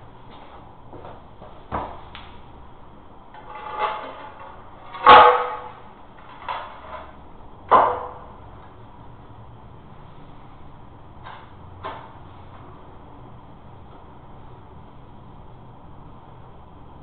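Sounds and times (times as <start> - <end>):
hand tool knocks and scraping: 3.3 - 7.1.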